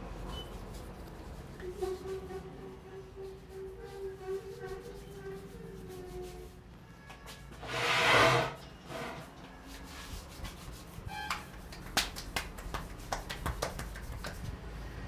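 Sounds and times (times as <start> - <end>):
hands rubbing hair: 9.7 - 14.5
sharp taps and clicks: 11.3 - 14.5.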